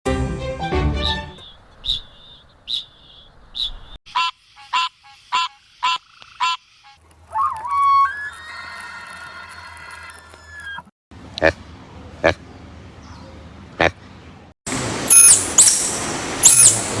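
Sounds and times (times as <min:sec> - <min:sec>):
wavering animal call: 0:07.2 - 0:10.9
animal calls: 0:07.3 - 0:11.5.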